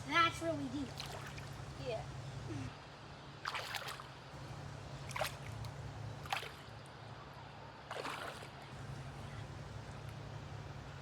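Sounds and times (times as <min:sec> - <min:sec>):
water sloshing and splashing: 0:00.8 - 0:01.7, 0:03.4 - 0:04.3, 0:05.0 - 0:06.8, 0:07.8 - 0:08.7.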